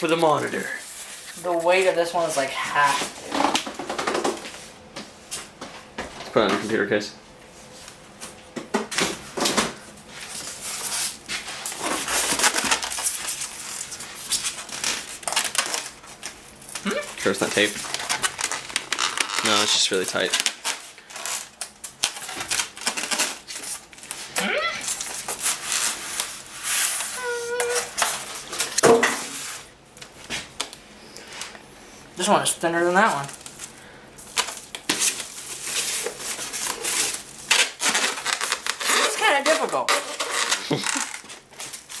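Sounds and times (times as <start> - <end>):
plastic and foam packaging rustling: 0.0 - 6.7, 7.6 - 42.0
packaging rustling and knocking: 11.6 - 24.1, 34.3 - 42.0.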